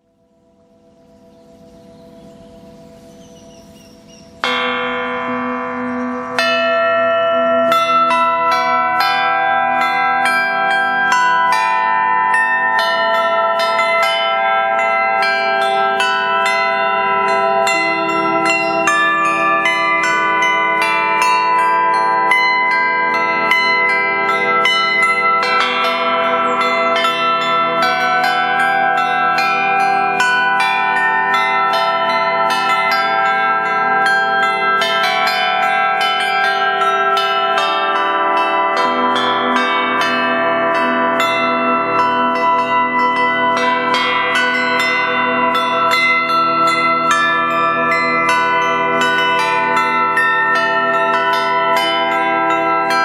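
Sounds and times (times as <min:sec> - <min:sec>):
church bells ringing: 0:00.0 - 0:53.0.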